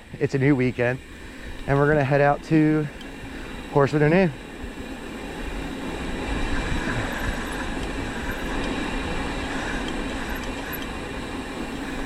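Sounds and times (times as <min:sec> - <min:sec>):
wind on microphone: 0:04.6 - 0:12.0.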